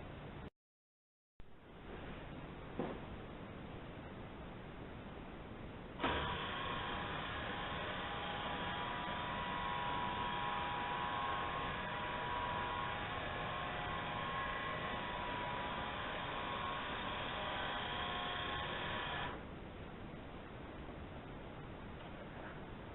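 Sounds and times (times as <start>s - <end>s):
robot vacuum motors humming: 6.0s - 19.4s.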